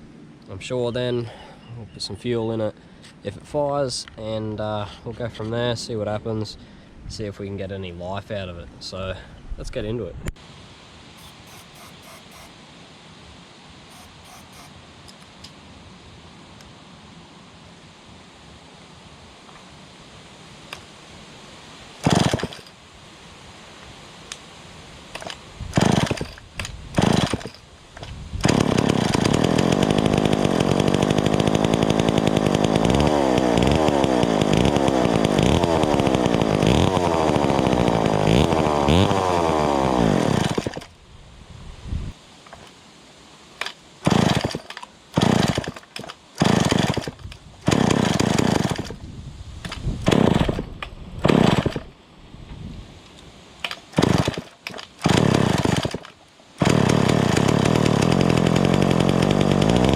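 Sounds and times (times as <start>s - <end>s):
chainsaw starting and revving: 11.2s - 12.5s, 13.9s - 14.7s, 22.0s - 22.7s, 25.2s - 27.6s, 28.4s - 40.9s, 43.6s - 49.0s, 49.7s - 51.9s, 53.7s - 59.9s.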